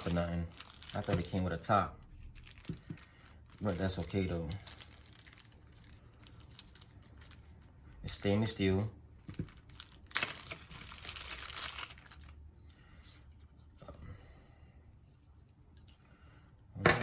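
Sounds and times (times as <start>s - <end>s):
packaging crinkling and rustling: 0.0s - 12.4s.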